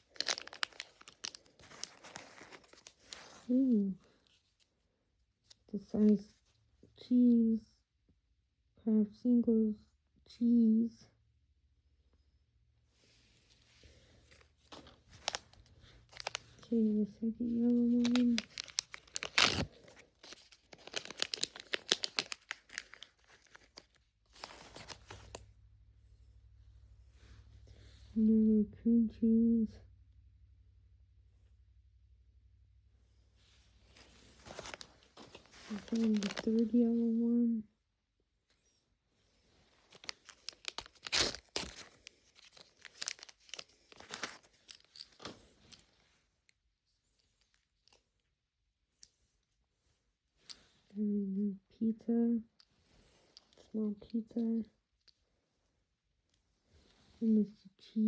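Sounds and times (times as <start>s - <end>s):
plastic packaging crinkling and tearing: 0.0s - 3.5s, 14.7s - 16.7s, 17.6s - 25.5s, 34.0s - 36.8s, 39.7s - 45.8s.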